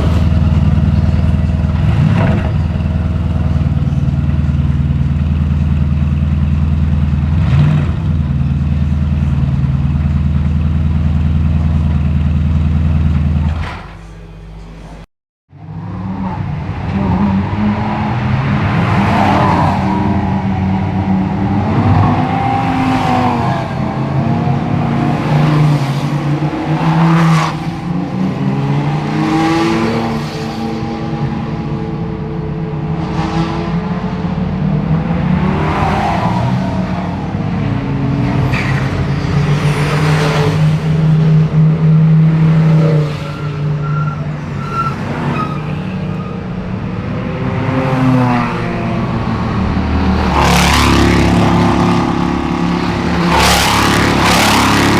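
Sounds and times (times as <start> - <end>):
race car engines holding low note: 0.0 - 54.9
race cars accelerating past: 15.6 - 54.9.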